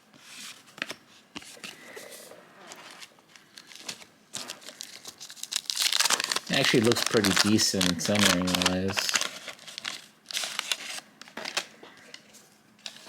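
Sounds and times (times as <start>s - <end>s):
cards rustling: 0.3s - 13.0s
plastic sleeve crinkling: 2.6s - 11.8s.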